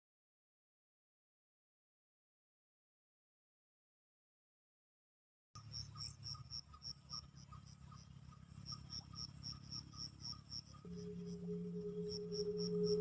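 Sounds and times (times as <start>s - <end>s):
insects chirping: 5.6s - 13.0s
lower pulsing insect call: 5.6s - 13.0s
low musical drone: 10.1s - 13.0s.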